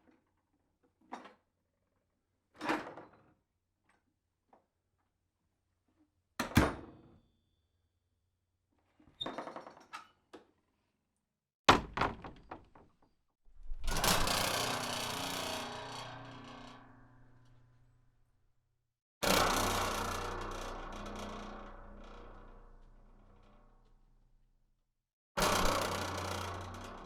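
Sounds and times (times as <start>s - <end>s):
door shutting with thunk: 11.7s - 12.9s
door slamming with rattle: 11.7s - 12.9s, 13.5s - 16.7s
long noisy door sound: 13.6s - 16.9s, 25.4s - 27.0s.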